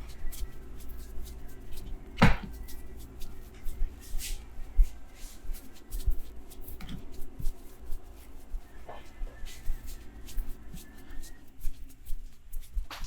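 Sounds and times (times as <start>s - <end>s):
hands tapping and patting: 0.0s - 4.4s, 9.4s - 13.0s
skin rubbing: 0.0s - 13.0s.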